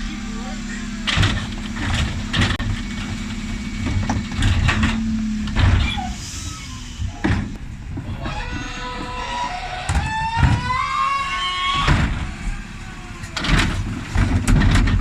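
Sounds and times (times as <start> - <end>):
truck hum: 0.0 - 15.0
bins banging and clattering: 7.2 - 15.0.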